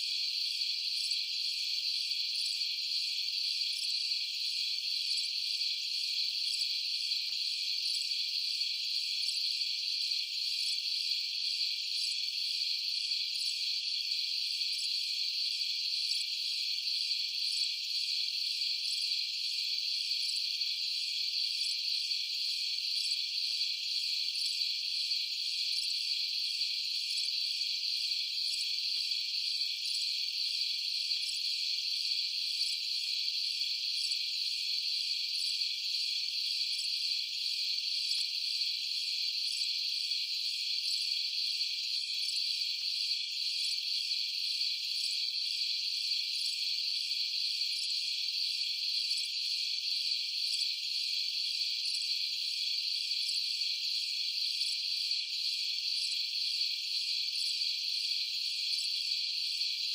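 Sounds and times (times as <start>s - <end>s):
crickets trilling: 0.0s - 59.9s.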